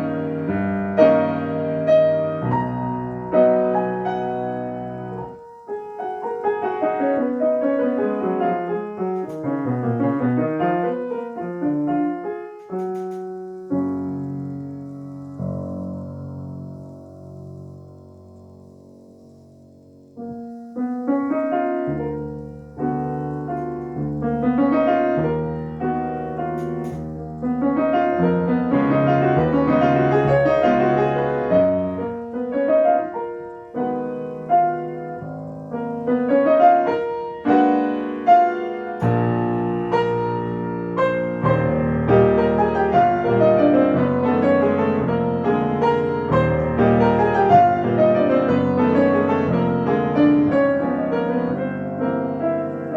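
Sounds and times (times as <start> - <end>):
solo piano classical piece: 0.0 - 52.9.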